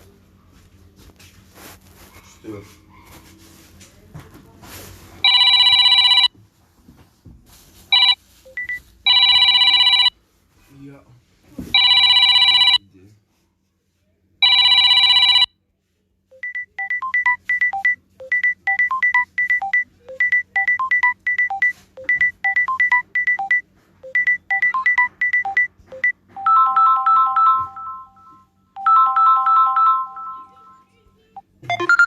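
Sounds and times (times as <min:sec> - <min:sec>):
high plinking ringtone melody: 0:16.4 - 0:30.9.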